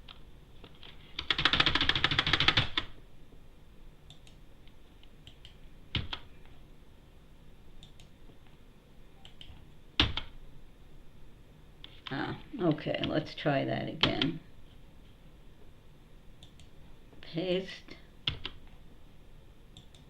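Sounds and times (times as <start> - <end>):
computer keyboard typing: 0.8 - 2.9, 5.3 - 6.3, 9.2 - 10.3, 18.3 - 18.6.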